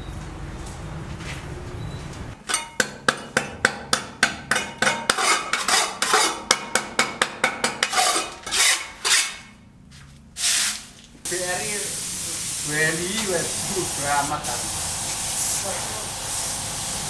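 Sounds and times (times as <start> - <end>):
scraping sounds: 4.6 - 6.6, 7.6 - 11.1.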